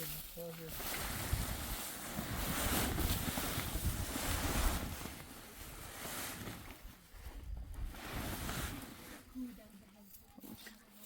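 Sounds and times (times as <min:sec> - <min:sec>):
wind buffeting microphone: 0:01.0 - 0:05.8.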